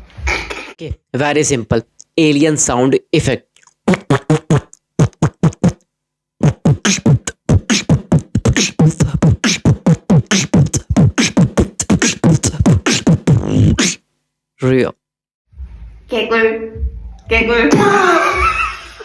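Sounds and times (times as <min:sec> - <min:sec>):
beatboxer warbling vocal chirps: 0:03.6 - 0:05.8, 0:06.4 - 0:14.0.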